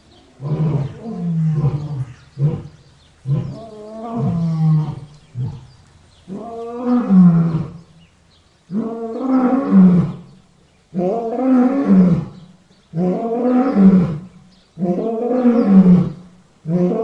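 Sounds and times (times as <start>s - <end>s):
large animal roaring: 0.4s - 5.7s.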